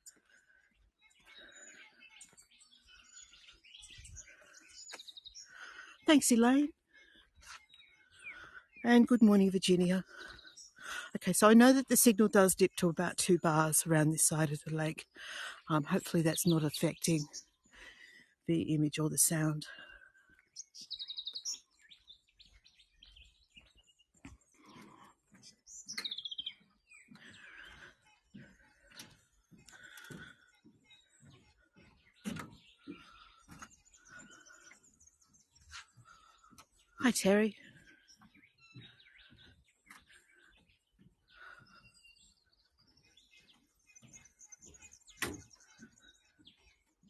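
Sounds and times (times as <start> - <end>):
footsteps on a path: 0.0 - 6.0, 6.8 - 11.7, 19.7 - 47.0
birds chirping: 0.0 - 47.0
bird song falling in pitch: 25.6 - 27.6.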